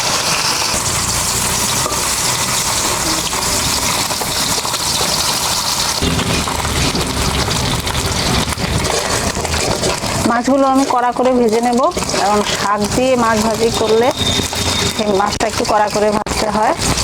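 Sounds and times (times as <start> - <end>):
fish frying in hot oil: 0.0 - 17.0
low hum: 6.0 - 9.6.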